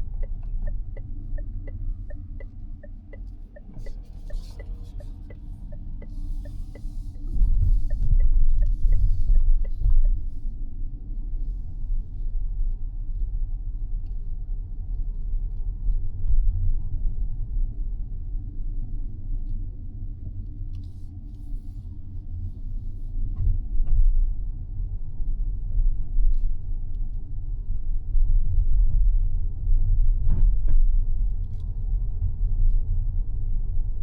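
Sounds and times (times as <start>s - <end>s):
road and tyre noise: 0.0s - 14.0s
faint ticks: 0.2s - 10.3s.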